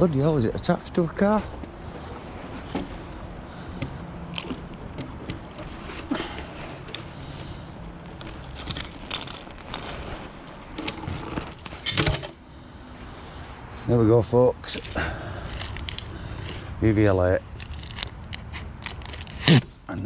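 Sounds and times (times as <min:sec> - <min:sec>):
metal clinking and rattling: 0:08.1 - 0:12.4.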